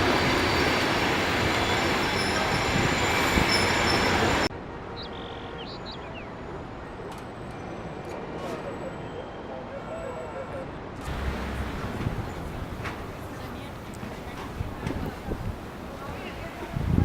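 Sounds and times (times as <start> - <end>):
train rumbling on rails: 0.0 - 4.9, 6.5 - 17.0.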